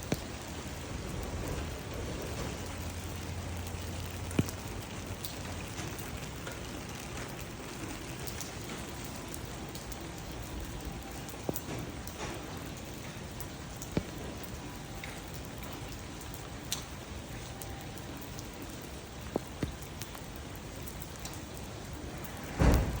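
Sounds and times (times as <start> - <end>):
steady hiss: 0.0 - 23.0
loud thump: 22.5 - 23.0.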